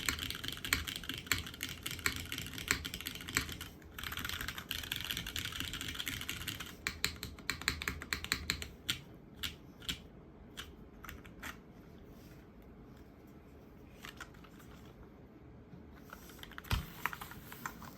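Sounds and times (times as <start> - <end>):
rapid typing: 0.0 - 10.0.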